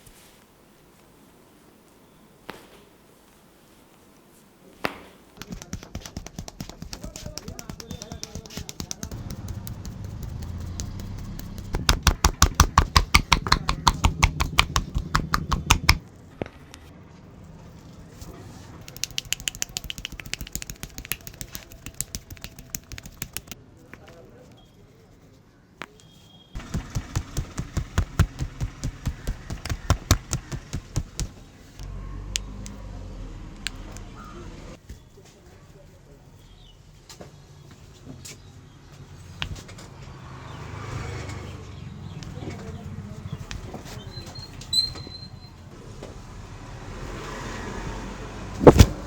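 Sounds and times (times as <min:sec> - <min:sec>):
rapid hand tapping on body: 0:05.4 - 0:16.0, 0:18.9 - 0:23.6, 0:26.6 - 0:31.4.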